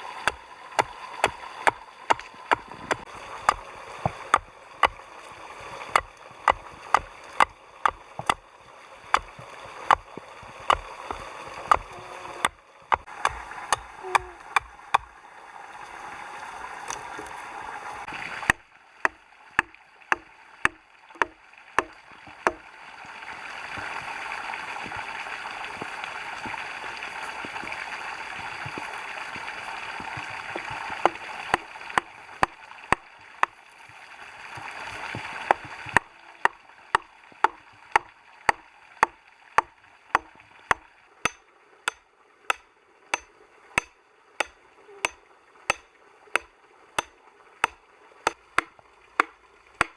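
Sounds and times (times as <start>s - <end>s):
stream rushing: 0.0s - 49.9s
tool striking: 5.9s - 8.4s, 19.6s - 22.6s, 40.2s - 49.9s.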